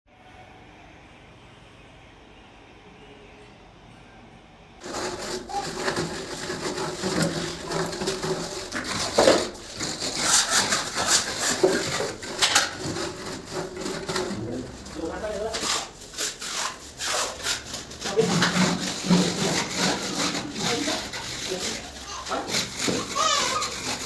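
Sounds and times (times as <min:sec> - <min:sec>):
construction knocks and clatter: 0:04.8 - 0:15.5, 0:17.8 - 0:24.0.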